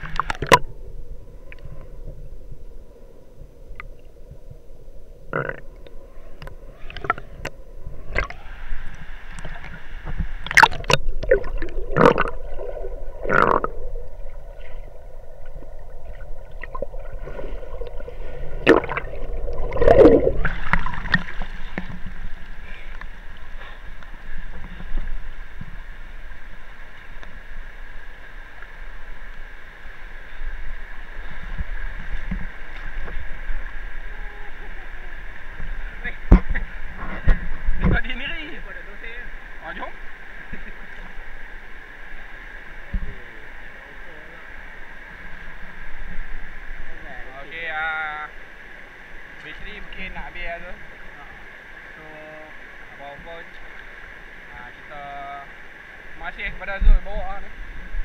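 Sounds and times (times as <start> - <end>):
muffled waterfall rushing: 0.0 - 58.0
sharp knocks and splashes: 18.6 - 22.2.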